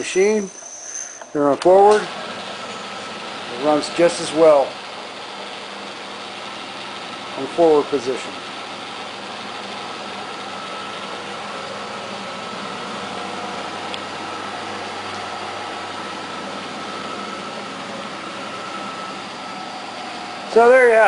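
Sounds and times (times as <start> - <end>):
mill-drill motor humming: 0.2 - 21.0
faint high whine: 9.9 - 21.0.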